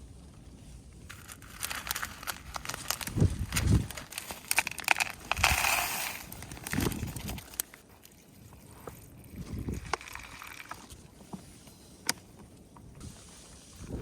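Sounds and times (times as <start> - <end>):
crinkly material rustling: 0.5 - 11.6.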